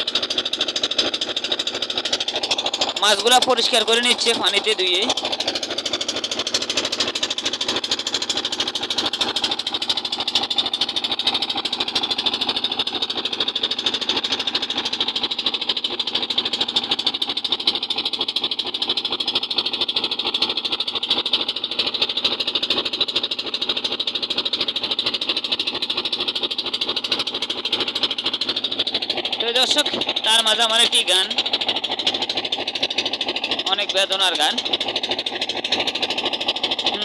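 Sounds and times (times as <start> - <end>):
boat engine chugging: 0.0 - 37.0.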